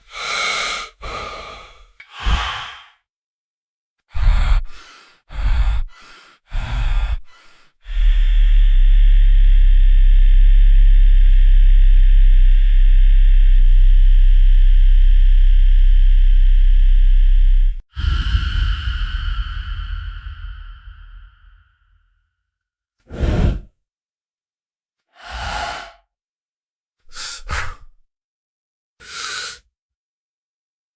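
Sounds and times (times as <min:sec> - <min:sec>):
person breathing heavily: 0:00.0 - 0:03.0, 0:04.1 - 0:08.4, 0:17.9 - 0:21.7
deep low rumble: 0:08.1 - 0:21.8.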